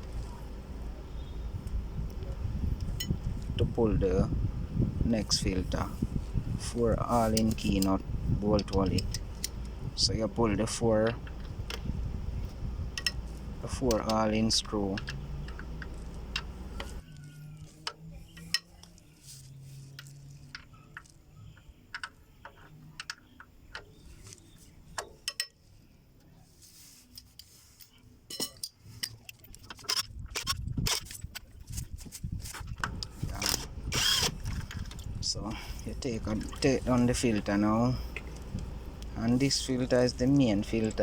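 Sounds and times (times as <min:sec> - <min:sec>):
metallic clicks of hex key and screws: 0:25.0 - 0:25.6.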